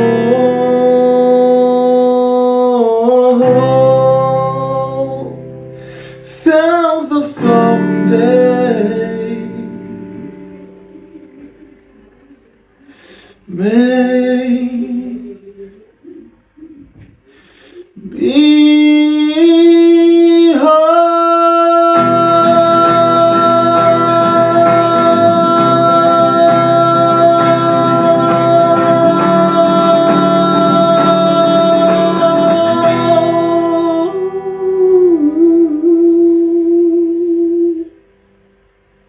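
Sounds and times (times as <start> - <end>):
strummed guitar and band: 0.0 - 1.7, 21.9 - 35.1
man singing a long held note: 0.0 - 5.5, 6.2 - 11.7, 18.0 - 38.0.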